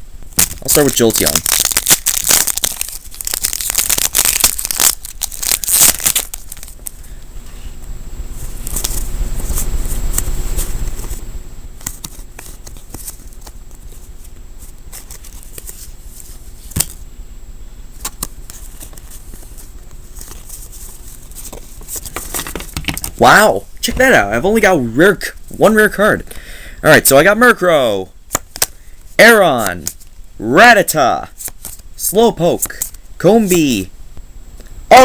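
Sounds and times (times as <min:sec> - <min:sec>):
foil wrapper crinkling and tearing: 0:00.4 - 0:07.2, 0:08.5 - 0:11.2, 0:11.8 - 0:17.0.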